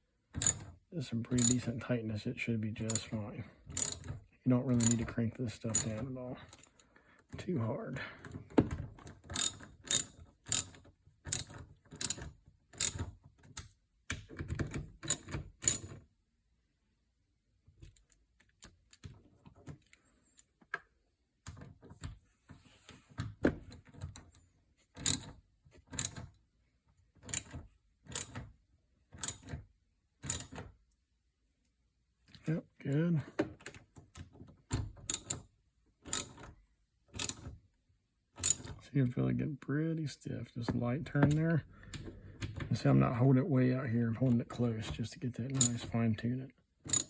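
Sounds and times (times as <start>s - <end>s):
socket ratchet clicking: 0.4s - 0.7s, 1.4s - 1.6s, 3.7s - 4.1s, 4.8s - 5.0s, 5.7s - 6.0s, 9.3s - 13.1s, 15.0s - 15.9s, 25.0s - 25.3s, 26.0s - 26.2s, 27.3s - 28.4s, 29.2s - 29.5s, 30.2s - 30.6s, 35.0s - 35.4s, 36.1s - 36.4s, 37.2s - 37.5s, 38.4s - 38.7s.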